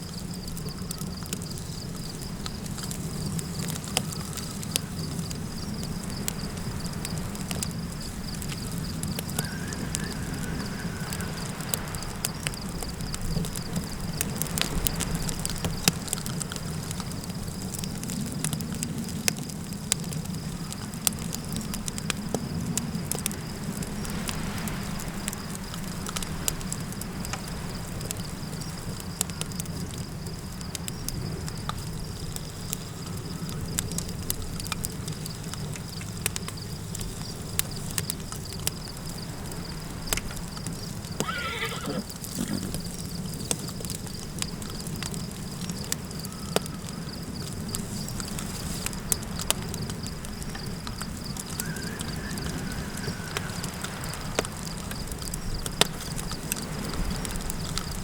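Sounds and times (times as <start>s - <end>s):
campfire crackling: 0.0s - 58.0s
low rumble of wind: 0.0s - 58.0s
horse whinnying: 41.2s - 42.8s.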